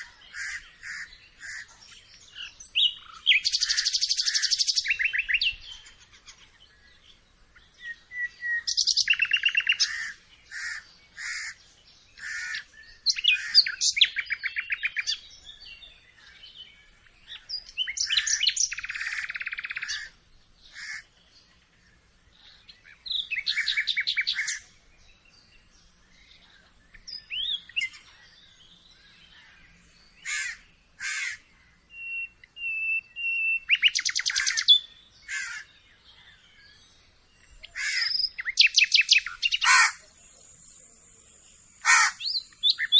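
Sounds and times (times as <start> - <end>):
birds chirping and trilling: 0.0 - 42.9
whistled bird notes: 7.7 - 10.1, 12.5 - 20.1, 22.6 - 30.6, 31.9 - 35.0, 36.6 - 40.8.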